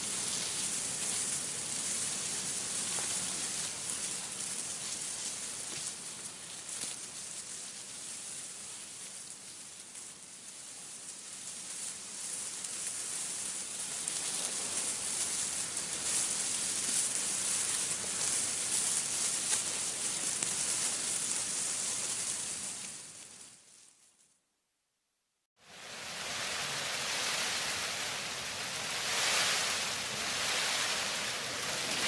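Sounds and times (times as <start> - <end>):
wind rustling tree leaves: 0.0 - 24.0, 25.6 - 32.0.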